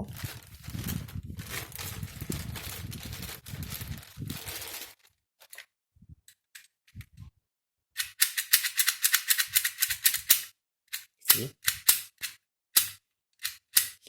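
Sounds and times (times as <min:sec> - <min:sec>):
lock mechanism sharp clicks: 0:08.0 - 0:14.0.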